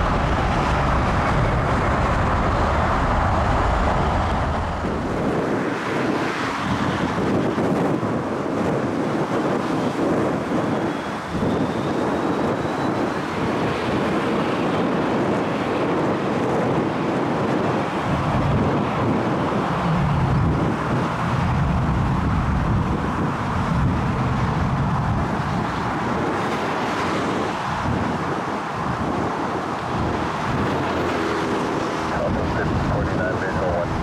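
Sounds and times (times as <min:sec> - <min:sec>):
jet engines rumbling: 0:00.0 - 0:34.0
wind buffeting microphone: 0:00.0 - 0:34.0.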